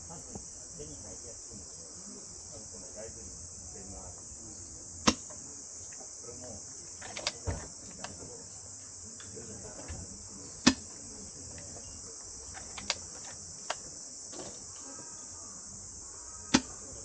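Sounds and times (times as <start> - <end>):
insect chorus: 0.0 - 17.0
sharp clicks or knocks: 5.1 - 5.4, 16.5 - 16.8.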